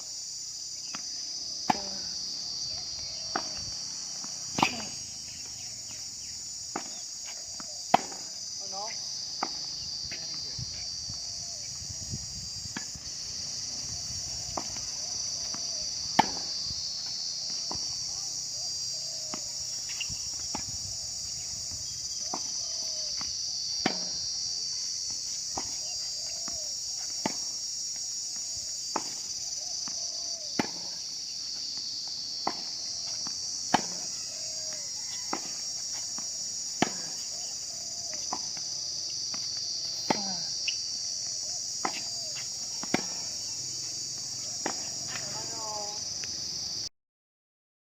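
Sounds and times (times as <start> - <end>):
insects chorus: 0.0 - 46.9
tennis ball struck by racquet: 3.3 - 3.6, 4.5 - 5.0, 6.7 - 7.0, 7.9 - 8.3, 9.3 - 9.7, 14.5 - 16.6, 17.5 - 18.0, 22.2 - 22.6, 23.2 - 24.3, 27.2 - 27.5, 28.9 - 31.0, 32.4 - 34.2, 35.3 - 37.3, 38.2 - 38.7, 39.3 - 40.4, 41.8 - 42.1, 42.8 - 43.4, 44.6 - 45.3.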